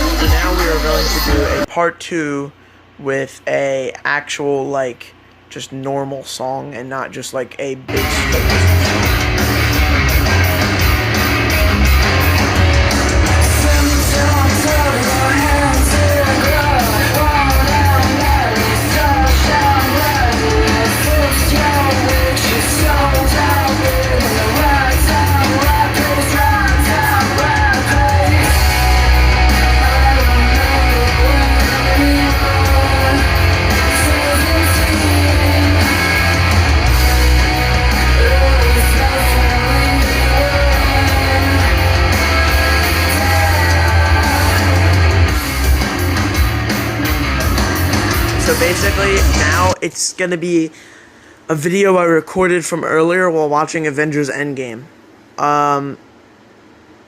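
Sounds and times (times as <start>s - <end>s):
song with singing and guitar: 7.9s - 49.8s.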